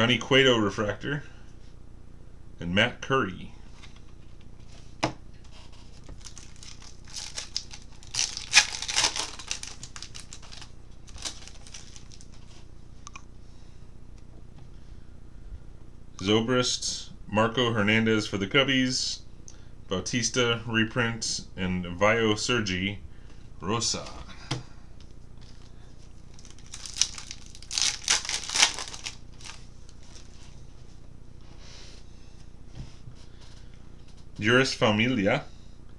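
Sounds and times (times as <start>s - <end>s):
foil wrapper crinkling and tearing: 5.7s - 12.5s, 25.4s - 30.5s.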